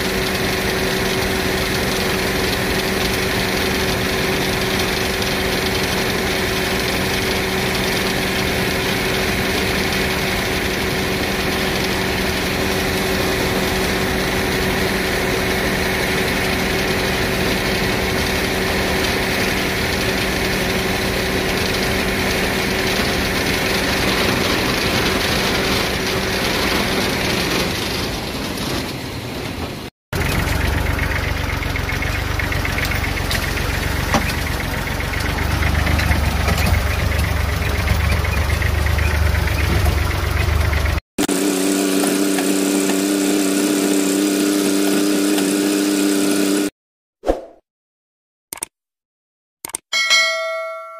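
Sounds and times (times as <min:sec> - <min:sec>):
combine harvester running: 0:00.0 - 0:46.7.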